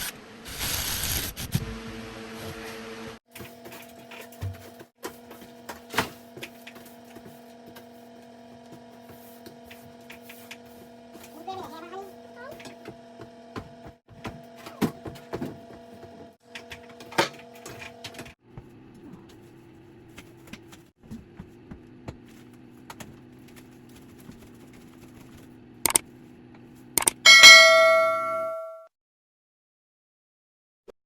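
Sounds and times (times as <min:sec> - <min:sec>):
metallic ding ringing: 0:27.3 - 0:28.9.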